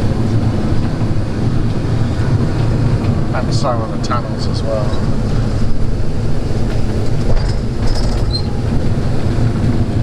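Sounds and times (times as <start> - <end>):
electric buggy rattling rumble: 0.0 - 10.0
high squeak: 7.9 - 8.5.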